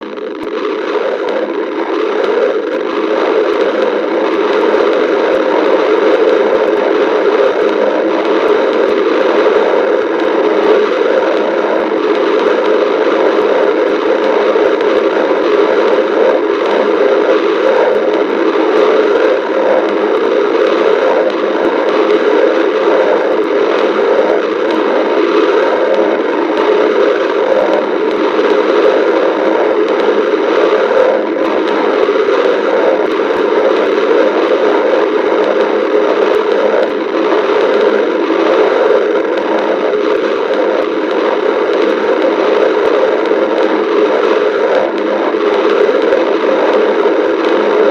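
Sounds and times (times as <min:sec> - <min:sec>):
stomach growling: 0:00.0 - 0:47.9.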